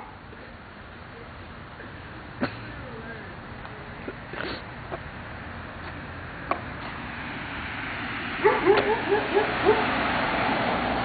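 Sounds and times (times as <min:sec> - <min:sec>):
street traffic: 0:00.0 - 0:11.0
dog yapping: 0:08.4 - 0:09.9.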